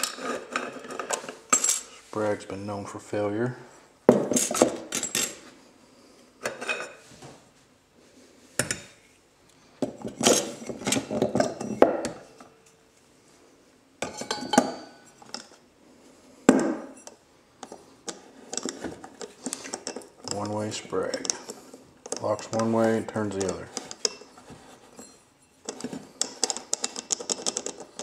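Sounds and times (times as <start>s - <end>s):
steel parts clinking and clattering: 0.0s - 2.0s, 4.3s - 5.5s, 16.9s - 28.0s.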